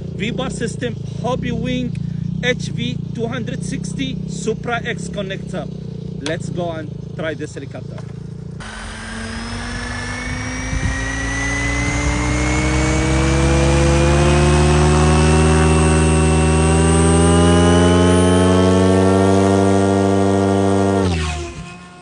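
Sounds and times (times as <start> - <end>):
rc helicopter motor whine: 8.5 - 22.0.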